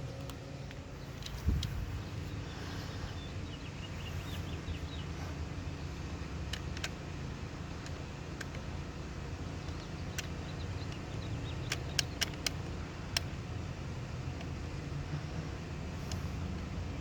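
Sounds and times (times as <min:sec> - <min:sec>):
low outdoor rumble: 0:00.0 - 0:17.0
light clicks: 0:00.1 - 0:02.5, 0:06.0 - 0:07.1, 0:07.7 - 0:08.8, 0:09.5 - 0:13.6, 0:14.3 - 0:16.8.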